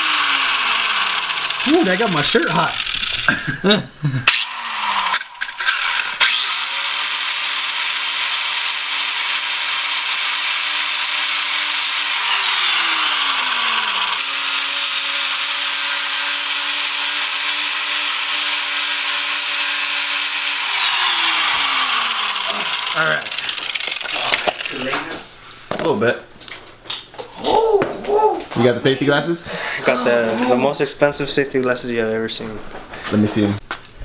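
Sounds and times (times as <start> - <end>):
angle grinder grinding metal: 0.0 - 3.5, 4.3 - 25.0.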